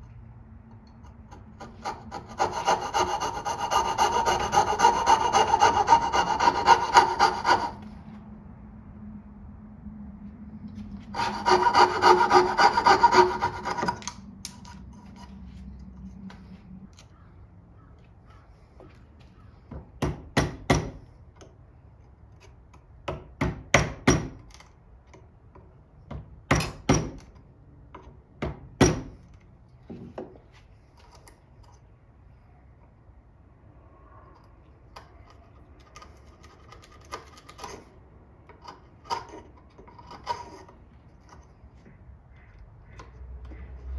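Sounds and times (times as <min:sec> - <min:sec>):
hand saw cutting wood: 0:01.3 - 0:07.8, 0:11.1 - 0:14.1, 0:38.6 - 0:40.8.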